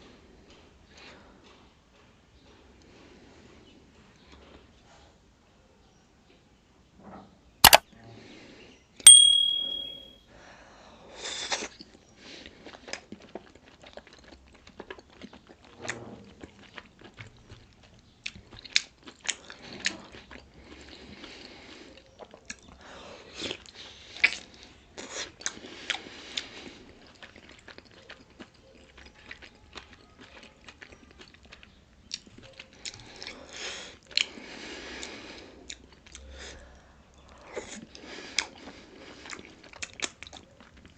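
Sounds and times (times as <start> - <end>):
sharp ringing clink: 9.1 - 10.1.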